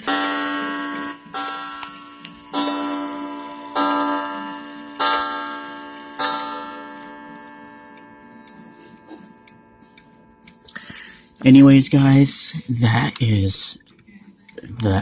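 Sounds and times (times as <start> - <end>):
clock striking a coil gong: 0.0 - 10.6.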